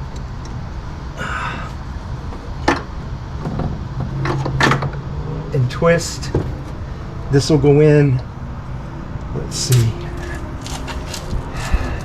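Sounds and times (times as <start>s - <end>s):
steady low hum: 0.0s - 12.0s
rustle of handling: 9.7s - 12.0s.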